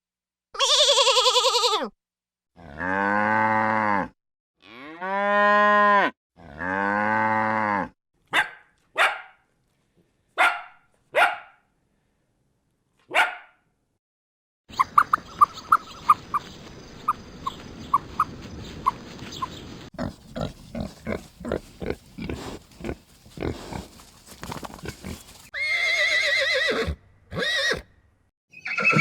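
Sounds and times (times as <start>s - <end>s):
cow mooing: 2.6s - 7.9s
dog barking: 8.3s - 9.4s, 10.4s - 11.6s, 13.1s - 13.6s.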